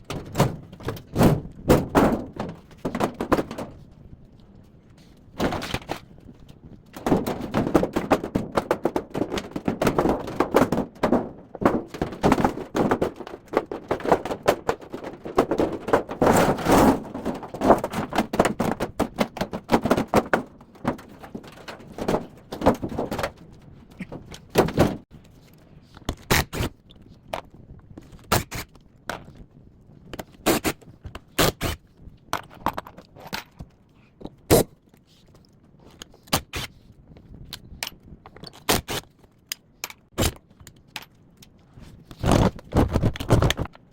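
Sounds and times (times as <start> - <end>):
metal and plastic parts knocking: 0.0 - 3.8, 6.9 - 25.0.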